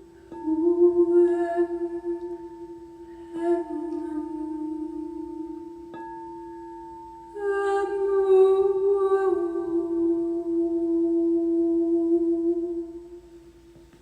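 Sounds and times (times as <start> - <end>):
person humming: 0.0 - 6.0, 7.4 - 13.4
singing bowl ringing: 0.0 - 10.2.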